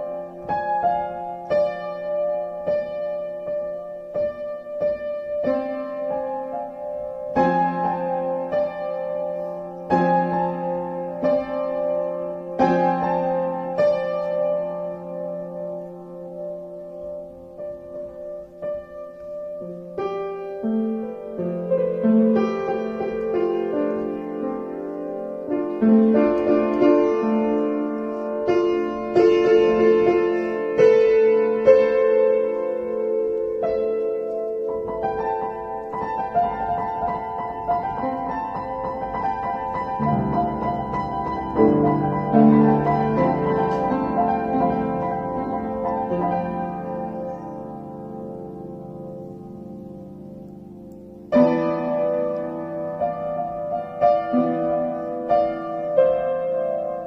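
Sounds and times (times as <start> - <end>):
slow piano improvisation: 0.0 - 57.0.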